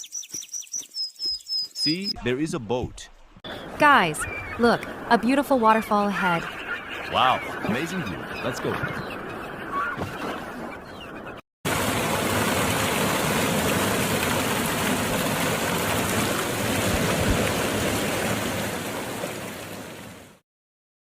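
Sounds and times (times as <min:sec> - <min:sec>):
waterfall rushing: 0:11.7 - 0:20.2.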